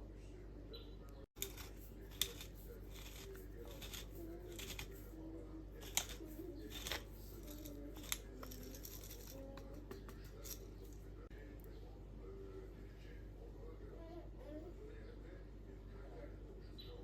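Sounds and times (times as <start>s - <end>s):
utensils clicking and tapping: 1.4s - 5.1s, 5.8s - 11.0s
scraping and rustling: 1.4s - 5.2s, 5.8s - 11.0s.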